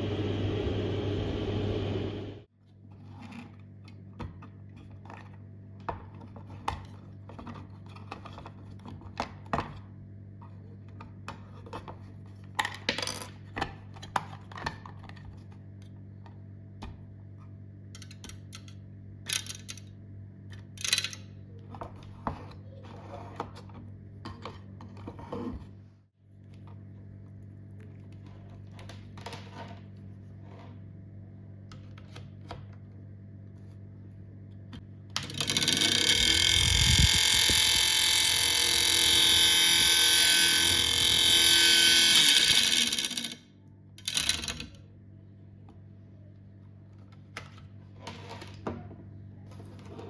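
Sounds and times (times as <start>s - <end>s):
loud whirring noise: 0.0s - 2.5s, 35.2s - 43.4s
steady low hum: 0.0s - 2.5s, 15.1s - 41.7s.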